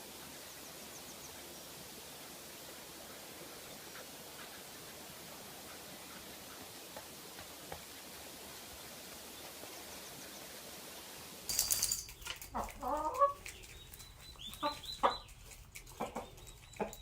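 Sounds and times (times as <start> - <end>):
chicken squawking and clucking: 12.6 - 13.6.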